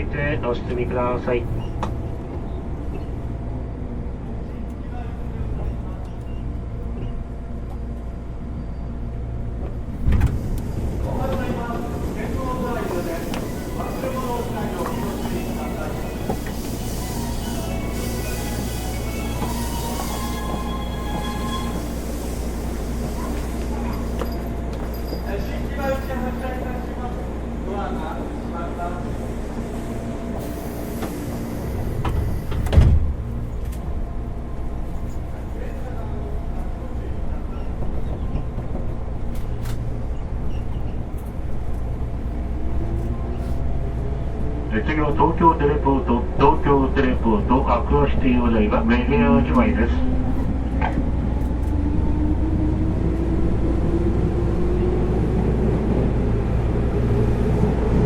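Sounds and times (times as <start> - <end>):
wheels rumbling on track: 0.0 - 58.0
train doors shutting thump: 9.6 - 11.6, 30.5 - 33.9
air hissing: 12.7 - 23.9, 29.7 - 32.6.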